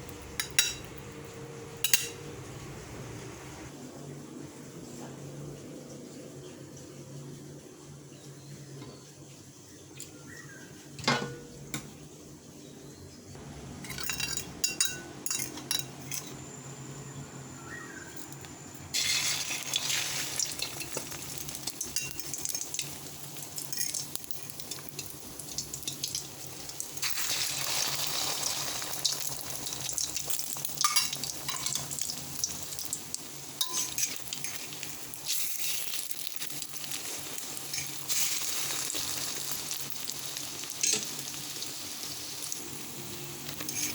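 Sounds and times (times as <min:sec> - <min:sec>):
food sizzling in hot oil: 0:18.9 - 0:43.9
utensil clinking against pan: 0:33.6 - 0:34.6.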